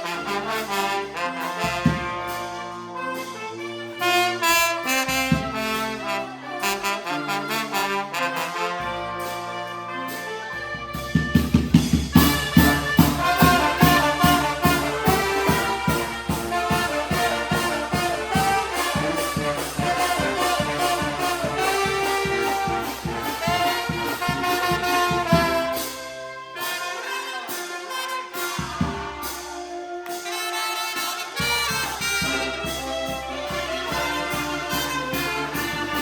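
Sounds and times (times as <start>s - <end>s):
brass band playing dance tune: 0.0s - 36.0s
bass drum beat: 11.1s - 25.7s.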